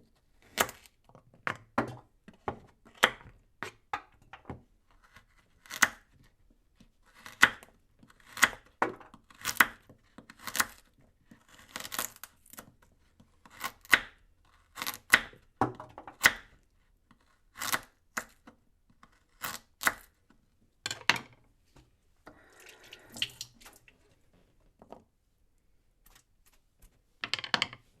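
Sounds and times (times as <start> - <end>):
knife chopping carrot: 6.8 - 12.7, 13.4 - 16.6, 17.2 - 20.2.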